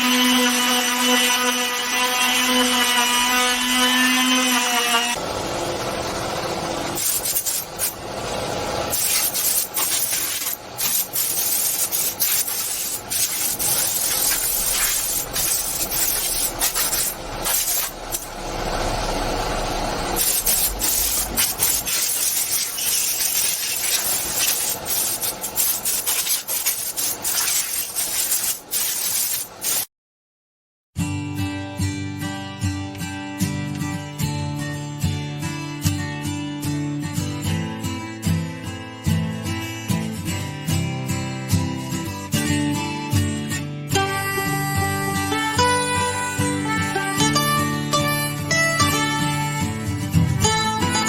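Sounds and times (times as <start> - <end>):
abrasive tool scraping wood: 7.0 - 8.0, 8.9 - 18.5, 20.2 - 29.9
wood being sanded: 9.0 - 18.4, 20.2 - 29.9.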